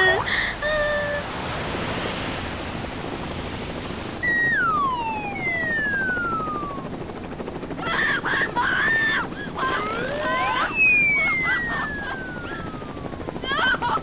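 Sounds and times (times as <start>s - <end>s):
whistle sliding down in pitch: 4.2s - 6.8s.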